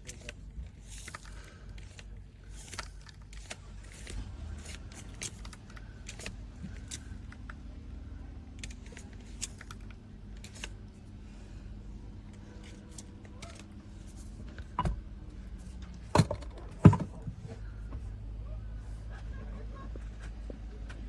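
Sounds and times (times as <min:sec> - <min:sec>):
small hard objects clicking and rattling: 0:00.0 - 0:07.5
low steady hum: 0:00.0 - 0:21.0.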